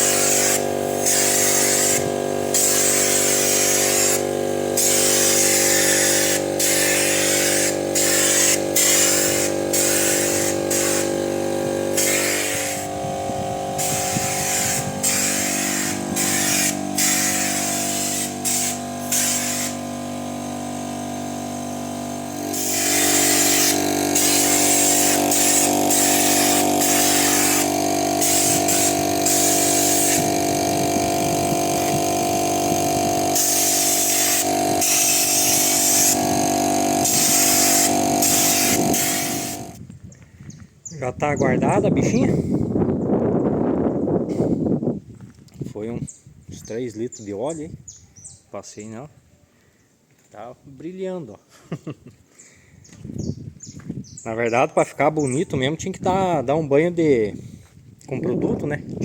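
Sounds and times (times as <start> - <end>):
air compressor humming: 0.0 - 39.8
spray gun hissing bursts: 0.0 - 39.8.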